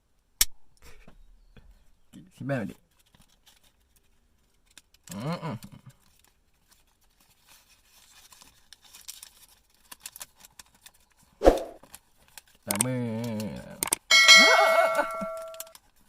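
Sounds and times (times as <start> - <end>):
cardboard and plastic packaging rustling: 2.8 - 5.0, 6.0 - 13.6.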